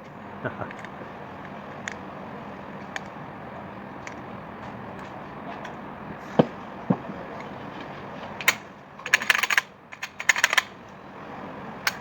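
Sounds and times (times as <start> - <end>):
pistol metallic clicking and rattling: 8.4 - 10.7.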